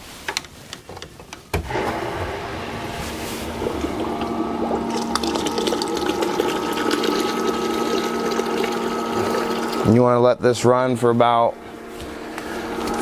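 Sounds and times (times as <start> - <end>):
pump humming: 1.6 - 10.0, 11.4 - 13.0
liquid churning and splashing: 1.7 - 9.9.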